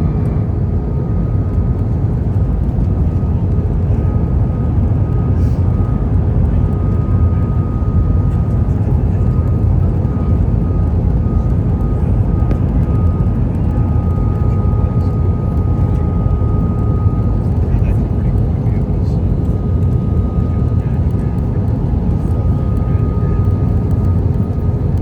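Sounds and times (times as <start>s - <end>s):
airflow rush and engine drone: 0.0s - 25.0s
thin wavering whine: 0.0s - 25.0s.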